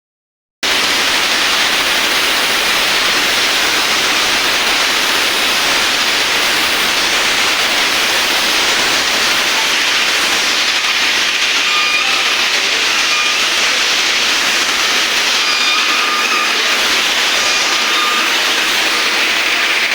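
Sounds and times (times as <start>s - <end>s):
steel-cutting machine hissing: 0.6s - 19.9s.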